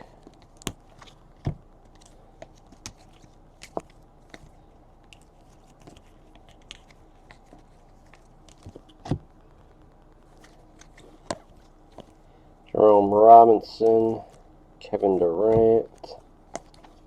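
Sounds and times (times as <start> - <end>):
trading cards clicking and snapping: 5.1 - 9.2.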